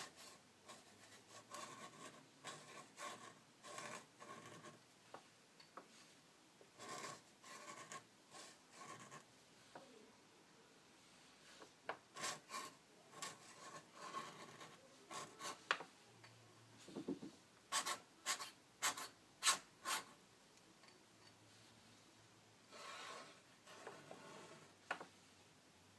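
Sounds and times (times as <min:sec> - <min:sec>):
pen scratching on paper: 0:00.0 - 0:04.8, 0:06.8 - 0:09.3, 0:12.1 - 0:15.7, 0:17.7 - 0:20.1.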